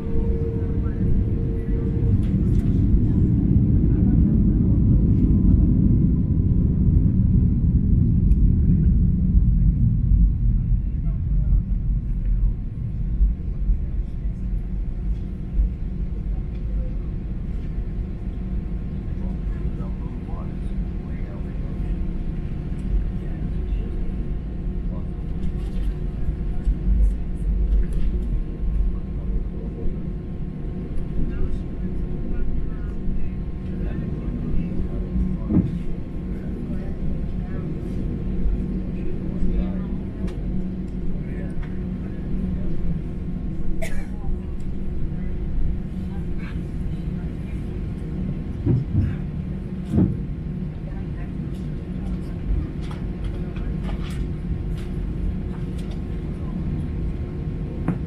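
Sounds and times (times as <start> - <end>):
faint steady whine: 0.0 - 5.1
jet engine rumble in cabin: 0.0 - 58.0.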